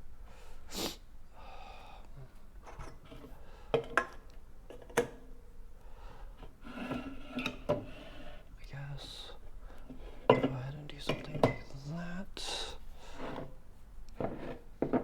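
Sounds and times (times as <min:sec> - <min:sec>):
drink containers knocking on table: 0:14.2 - 0:15.0.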